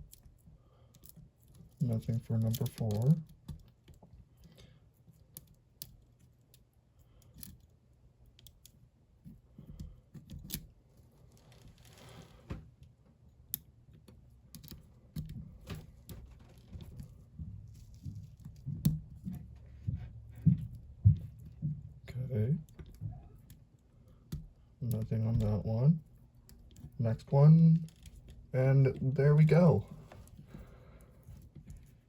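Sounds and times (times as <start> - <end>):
lock picks clicking in lock: 13.5 - 15.9.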